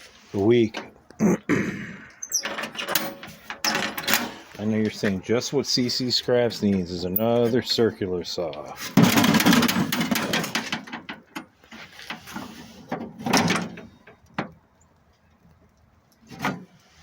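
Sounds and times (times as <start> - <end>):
objects clattering: 2.3 - 5.2, 8.8 - 13.9
knocks and rattles: 2.4 - 4.6, 8.9 - 11.4
sliding scrape: 11.7 - 12.9.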